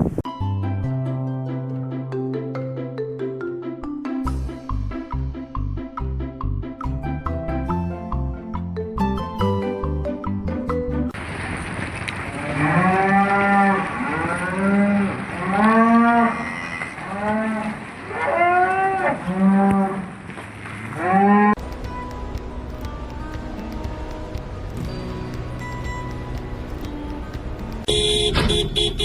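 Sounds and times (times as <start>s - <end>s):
animal mooing: 12.4s - 20.1s, 21.0s - 21.6s.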